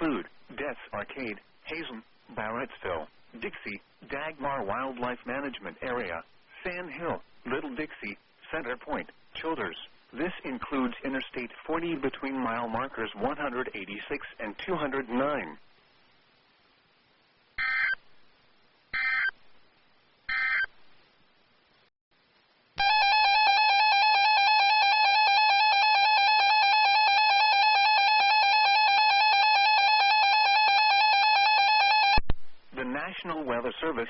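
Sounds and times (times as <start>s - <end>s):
digital data tone bursts: 17.6s - 18.0s, 19.0s - 19.4s.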